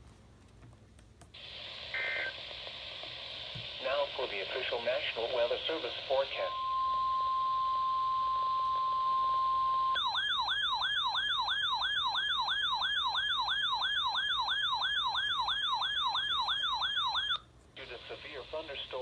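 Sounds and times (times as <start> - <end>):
steady high alarm tone: 6.4 - 17.4
yelping electronic siren: 6.4 - 17.4.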